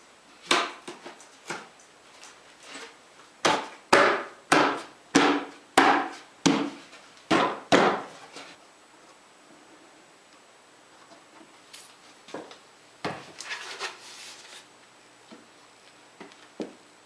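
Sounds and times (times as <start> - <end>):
sharp blows on wood: 3.4 - 8.1.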